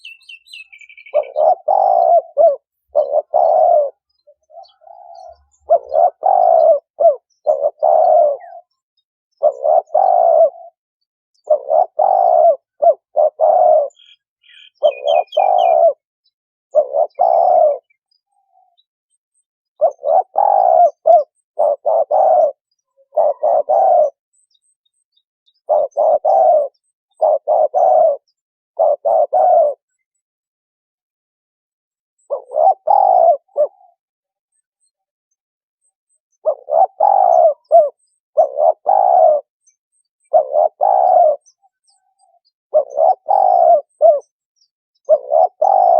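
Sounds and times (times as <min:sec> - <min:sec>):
dove cooing: 0:00.0 - 0:10.8, 0:11.4 - 0:16.0, 0:16.7 - 0:18.9, 0:19.8 - 0:24.2, 0:25.5 - 0:30.1, 0:32.2 - 0:34.0, 0:36.3 - 0:39.6, 0:40.2 - 0:44.4, 0:45.0 - 0:45.9
small bird chirping: 0:00.0 - 0:30.5, 0:31.7 - 0:45.9.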